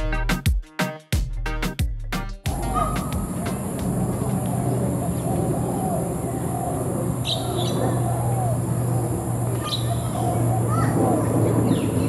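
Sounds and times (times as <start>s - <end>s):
sharp high chirps: 2.5s - 10.2s
birds calling and chirping: 2.5s - 12.0s
steady low hum: 2.5s - 12.0s.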